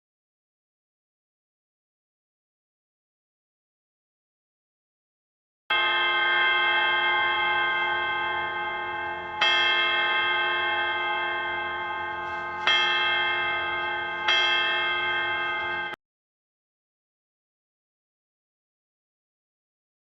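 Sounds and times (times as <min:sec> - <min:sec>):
bell tolling: 0:05.7 - 0:16.0.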